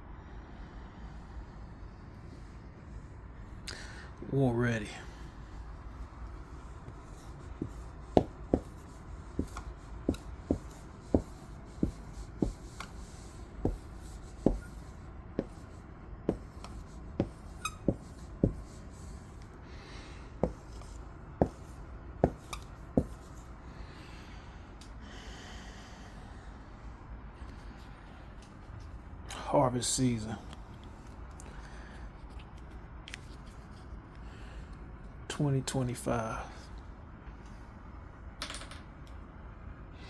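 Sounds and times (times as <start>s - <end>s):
low steady hum: 0.0s - 40.0s
sharp irregular taps: 6.9s - 15.6s, 16.3s - 18.8s, 20.4s - 23.3s.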